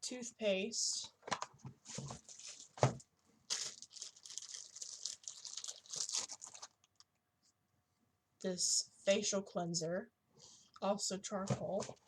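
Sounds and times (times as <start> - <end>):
packaging crinkling and rustling: 1.4 - 7.1.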